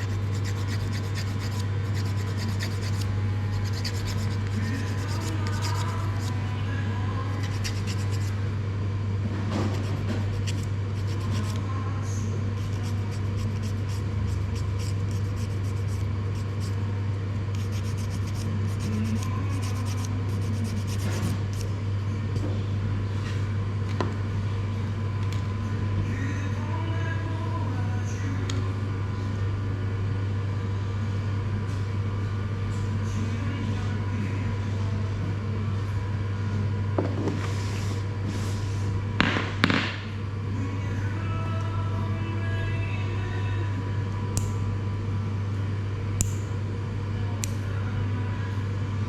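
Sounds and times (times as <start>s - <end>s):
blades rasping through hair: 0.0s - 6.4s.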